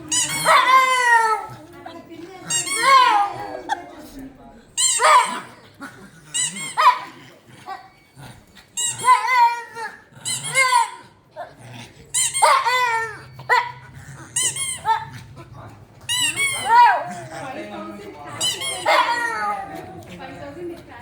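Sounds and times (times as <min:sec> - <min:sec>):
dog whining yelps: 0:04.8 - 0:05.6, 0:06.4 - 0:07.1, 0:08.8 - 0:09.8, 0:12.2 - 0:13.8, 0:16.1 - 0:17.1, 0:18.4 - 0:19.6.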